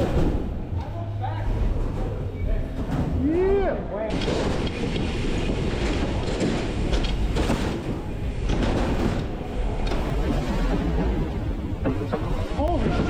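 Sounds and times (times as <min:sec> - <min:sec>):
bike tyres rolling: 0:00.0 - 0:13.0.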